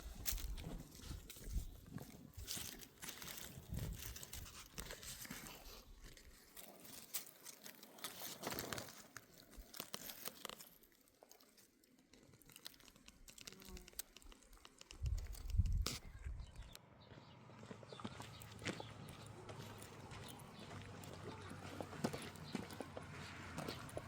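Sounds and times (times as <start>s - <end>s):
rustling and crinkling: 0.0s - 16.8s.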